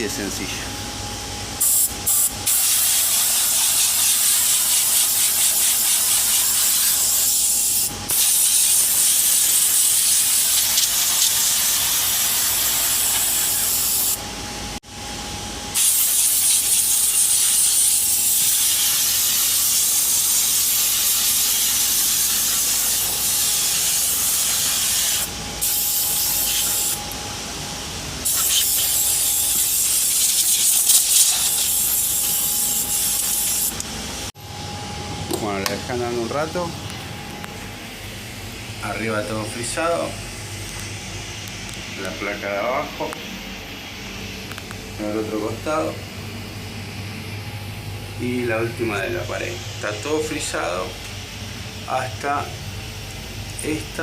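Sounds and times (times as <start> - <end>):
compressed air hissing: 1.6 - 14.2, 15.7 - 27.2, 28.2 - 33.8.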